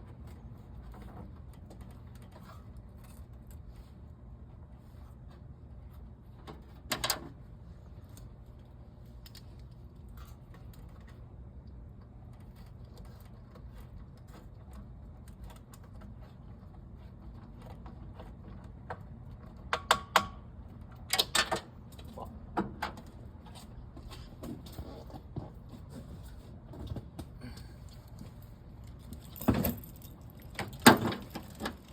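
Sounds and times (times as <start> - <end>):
steady low hum: 21.7 - 31.9.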